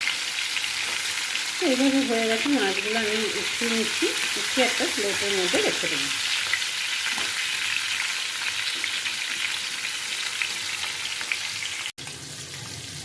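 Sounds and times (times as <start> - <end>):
fish sizzling in oil: 0.0 - 13.0.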